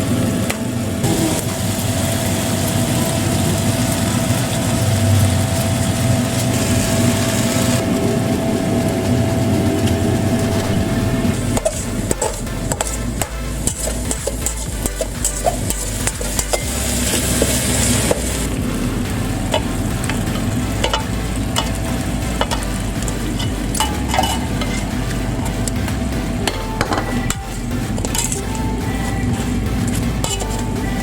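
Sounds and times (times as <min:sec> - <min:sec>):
food sizzling in oil: 0:01.0 - 0:25.5
utensil scraping and knocking pan: 0:11.4 - 0:18.4.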